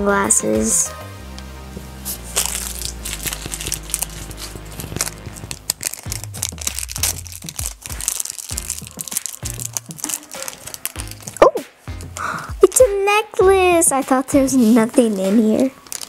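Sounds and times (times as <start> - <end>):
background music with bass line: 0.0 - 15.8
plastic packaging crinkling and tearing: 2.1 - 13.0, 15.0 - 16.0.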